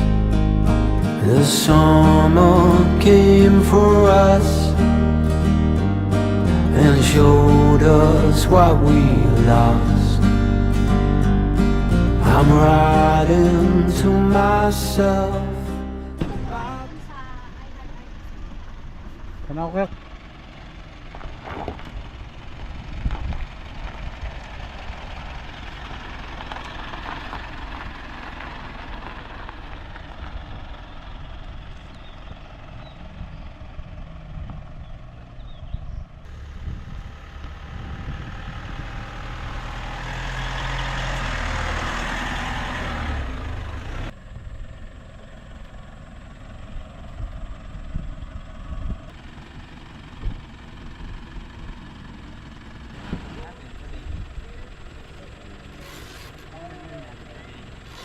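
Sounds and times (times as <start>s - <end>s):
road rumble: 0.0s - 58.0s
vehicle engine: 0.0s - 58.0s.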